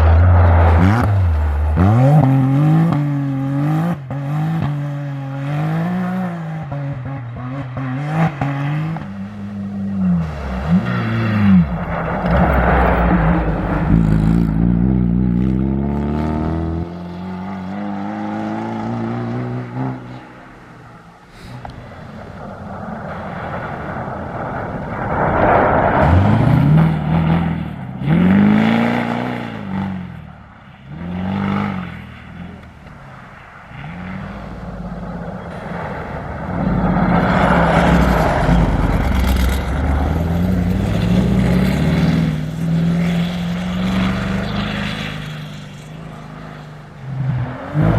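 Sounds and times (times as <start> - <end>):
racing car engines revving: 0.0 - 47.9.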